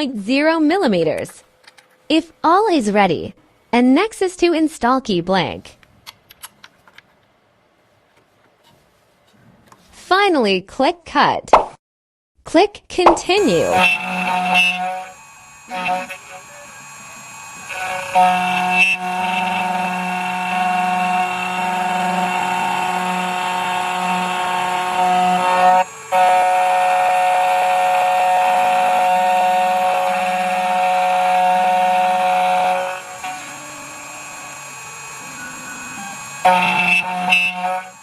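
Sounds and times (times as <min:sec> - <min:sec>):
key cutting machine whine: 0:13.4 - 0:38.0.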